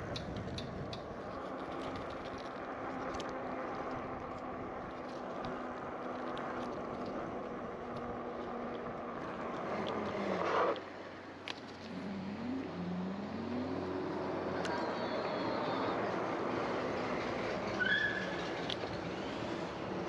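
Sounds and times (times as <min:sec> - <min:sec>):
road traffic: 0:00.0 - 0:20.0
vehicle passing close: 0:11.8 - 0:20.0.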